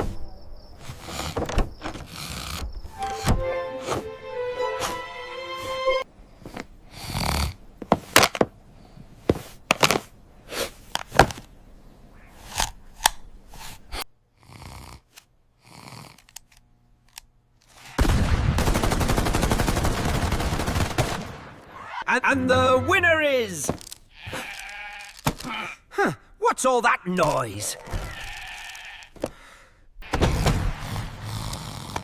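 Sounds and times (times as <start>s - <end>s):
soft snore-like breaths: 0.8s - 2.7s, 6.4s - 7.6s, 13.5s - 16.3s, 30.8s - 32.0s
loud gunfire noise from tv: 30.0s - 31.4s.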